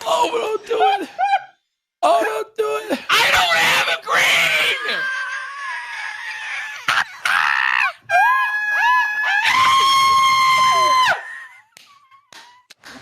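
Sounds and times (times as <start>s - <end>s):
people screaming: 3.1s - 11.7s.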